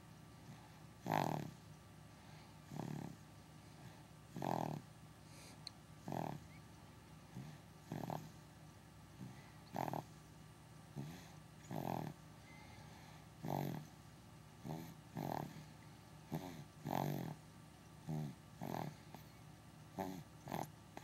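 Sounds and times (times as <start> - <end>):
faint breath sounds: 0.4 - 1.1, 2.1 - 4.2, 5.2 - 6.6, 9.1 - 10.1, 10.9 - 14.0
person snoring: 1.0 - 1.6, 2.7 - 3.2, 7.4 - 8.3, 9.2 - 10.1, 11.0 - 12.2, 13.4 - 13.9, 14.6 - 15.6, 16.3 - 17.4.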